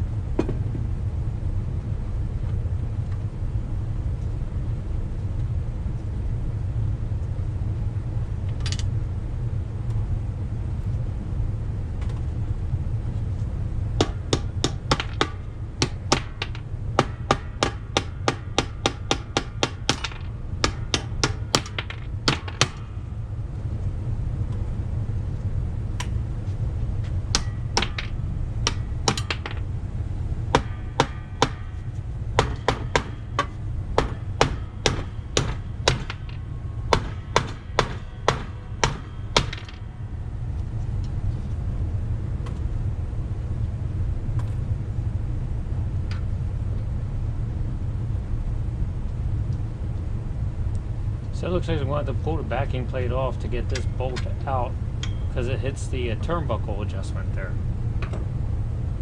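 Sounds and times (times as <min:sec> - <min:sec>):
steady low hum: 0:00.0 - 0:59.0
hammer tapping on metal: 0:14.0 - 0:22.9, 0:27.3 - 0:29.6, 0:30.6 - 0:39.8.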